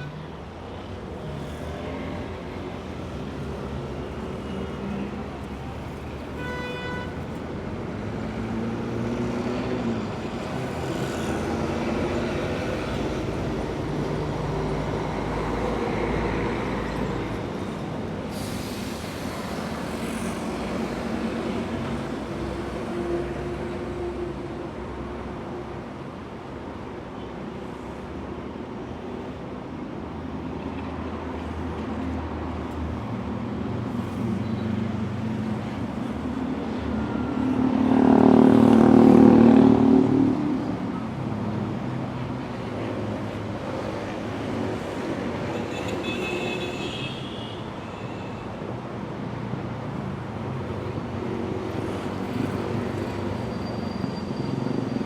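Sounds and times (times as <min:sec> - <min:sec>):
vehicle engines passing: 0:30.7 - 0:45.7.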